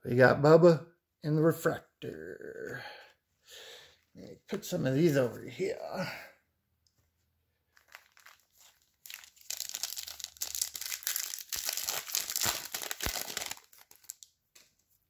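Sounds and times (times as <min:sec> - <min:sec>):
foil wrapper crinkling: 0:07.7 - 0:14.3.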